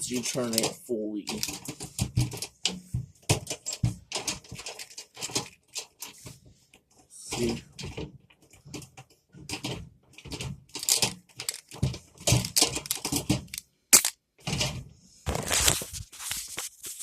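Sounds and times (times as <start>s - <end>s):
handling rattling and scraping: 0.0s - 17.0s.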